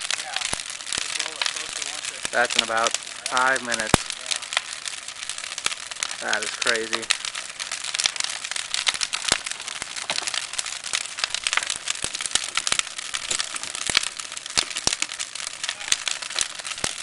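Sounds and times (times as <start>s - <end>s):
bonfire rushing hiss: 0.0s - 17.0s
burning wood crackling and popping: 0.0s - 17.0s.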